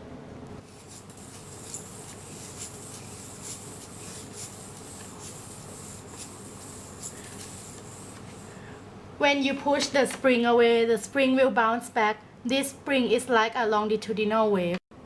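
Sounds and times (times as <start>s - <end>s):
steady hiss: 0.6s - 8.8s.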